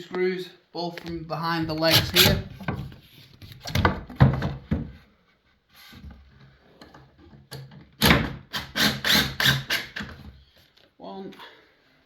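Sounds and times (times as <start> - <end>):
wooden panel knocks and thunks: 1.6 - 5.0.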